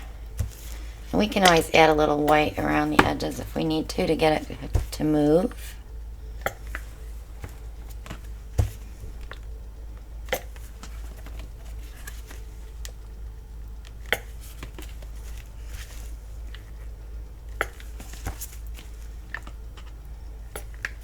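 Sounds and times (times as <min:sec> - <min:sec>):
plastic bottles clicking and tapping: 0:00.0 - 0:03.7
steady low hum: 0:00.0 - 0:21.0.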